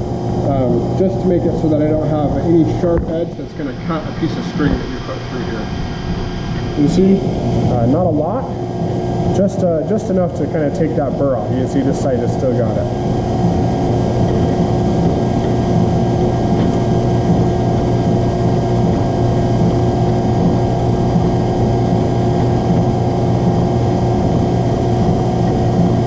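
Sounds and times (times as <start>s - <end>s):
drill press motor humming: 1.5s - 9.4s, 10.4s - 26.0s.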